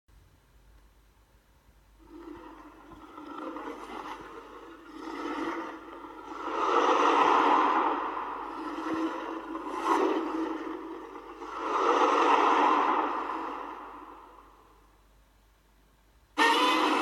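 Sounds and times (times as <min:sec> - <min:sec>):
monster roar: 0:02.0 - 0:14.8, 0:16.4 - 0:17.0.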